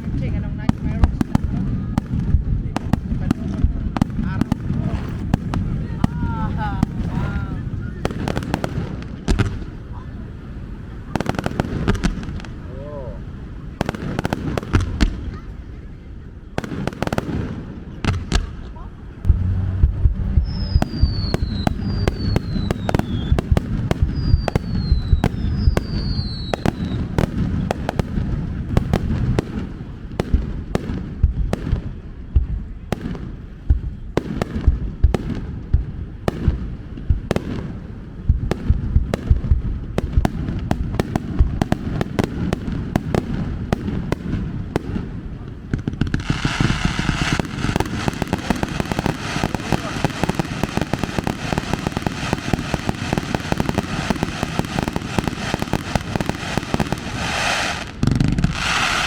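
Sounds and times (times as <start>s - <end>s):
fireworks bangs and crackling: 0.0s - 59.0s
falling firework whistles: 20.4s - 27.2s, 46.3s - 59.0s.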